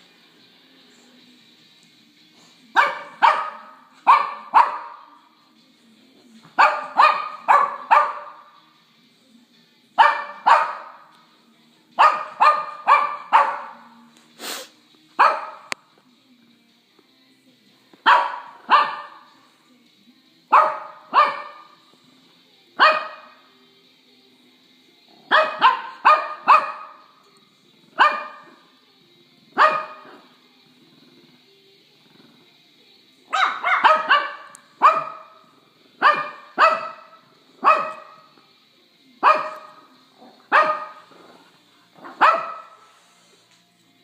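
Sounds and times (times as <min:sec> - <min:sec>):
puppy barking: 0:02.8 - 0:05.1, 0:06.6 - 0:08.5, 0:10.0 - 0:11.1, 0:12.0 - 0:13.9, 0:15.2 - 0:15.7, 0:18.1 - 0:19.3, 0:20.5 - 0:21.8, 0:22.8 - 0:23.4, 0:25.3 - 0:27.0, 0:28.0 - 0:28.6, 0:29.6 - 0:30.2, 0:33.3 - 0:35.4, 0:36.0 - 0:38.3, 0:39.2 - 0:39.8, 0:40.5 - 0:41.1, 0:42.0 - 0:42.8.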